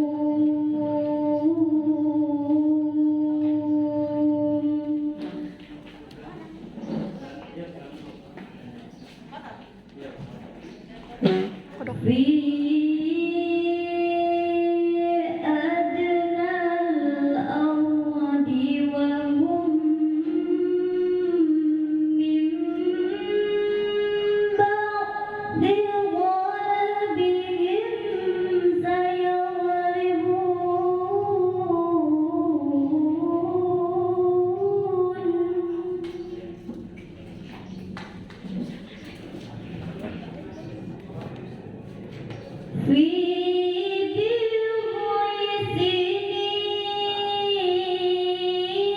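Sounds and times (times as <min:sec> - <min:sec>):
girl reciting melodically: 0:00.0 - 0:06.8, 0:11.2 - 0:36.4, 0:42.7 - 0:48.9.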